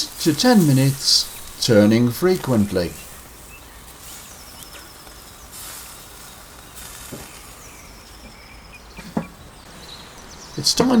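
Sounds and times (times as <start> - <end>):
meat sizzling on grill: 0.0 - 8.6.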